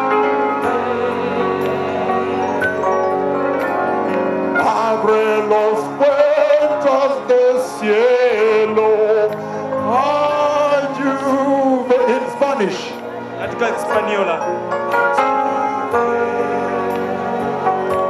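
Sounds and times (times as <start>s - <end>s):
man singing gospel: 0.0s - 2.4s, 4.6s - 14.3s
instrumental backing: 0.0s - 18.0s.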